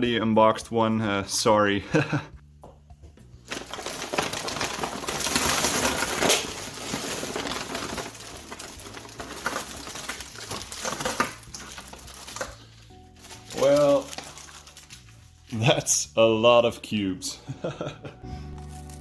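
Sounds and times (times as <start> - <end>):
packaging crinkling: 3.4 - 15.6.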